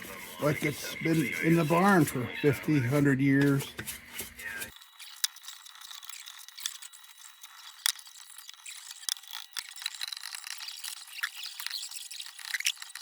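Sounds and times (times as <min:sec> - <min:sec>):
metal parts scraping: 0:03.5 - 0:13.0.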